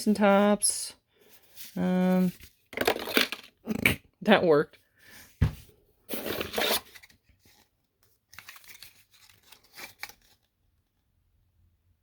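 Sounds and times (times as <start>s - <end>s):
packaging tearing and crinkling: 2.8s - 3.6s, 6.1s - 7.2s, 8.3s - 10.5s.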